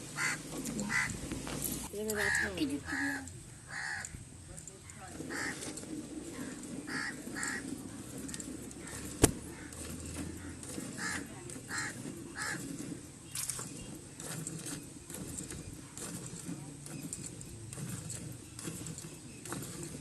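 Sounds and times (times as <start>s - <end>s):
harsh bird calls: 0.1s - 1.2s, 2.2s - 4.2s, 5.3s - 5.6s, 10.4s - 12.7s.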